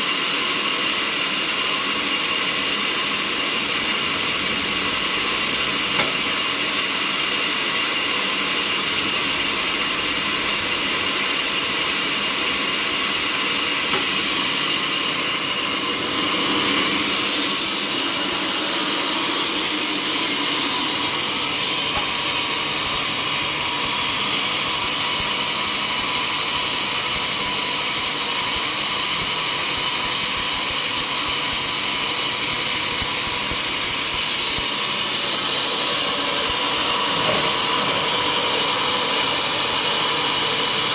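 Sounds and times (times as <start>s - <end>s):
sawmill saw whining: 0.0s - 40.9s.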